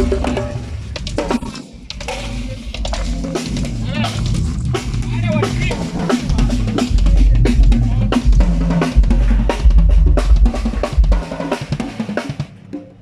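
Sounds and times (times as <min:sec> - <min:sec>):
drum kit playing: 0:00.0 - 0:13.0
deep sustained bass notes: 0:03.4 - 0:11.2.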